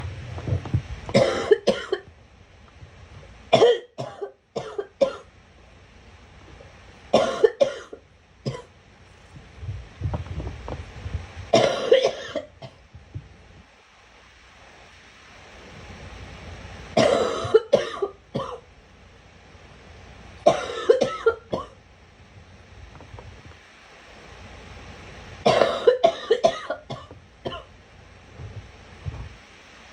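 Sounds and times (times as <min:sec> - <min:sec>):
girl coughing: 0:01.1 - 0:02.0, 0:03.5 - 0:05.2, 0:07.2 - 0:07.9, 0:11.6 - 0:12.5, 0:17.0 - 0:18.6, 0:20.5 - 0:21.7, 0:25.5 - 0:27.6.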